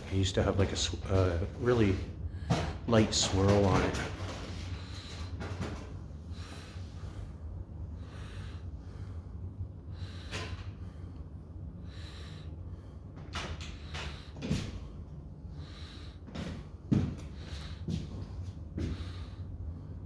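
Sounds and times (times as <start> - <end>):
low hum: 4.0 - 20.0.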